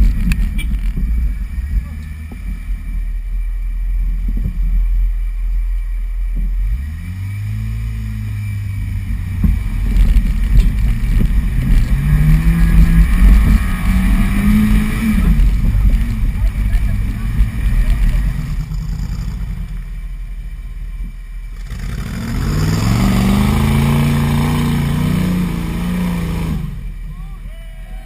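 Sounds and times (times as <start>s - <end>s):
engine revving under load: 6.6s - 20.0s, 21.5s - 27.1s.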